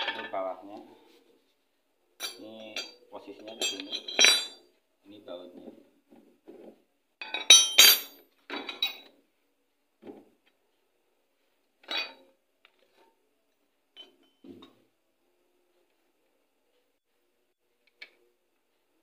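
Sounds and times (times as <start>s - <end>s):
metal tools clinking and clattering: 2.2s - 4.6s, 7.2s - 9.1s, 11.8s - 12.3s.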